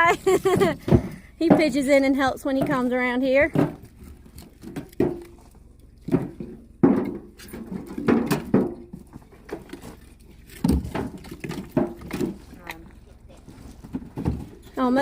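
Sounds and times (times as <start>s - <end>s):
firewood knocking: 0.2s - 15.0s.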